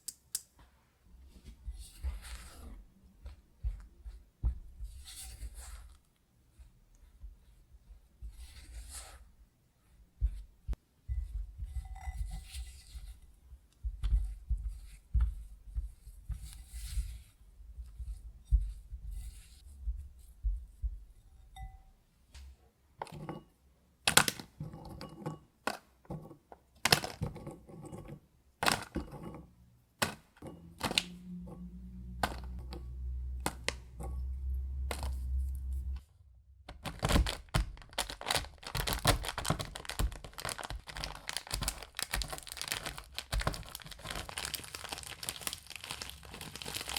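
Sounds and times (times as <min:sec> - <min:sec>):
soft low thuds: 0:01.5 - 0:05.1, 0:10.0 - 0:12.5, 0:13.3 - 0:21.8
low hum: 0:30.4 - 0:36.7.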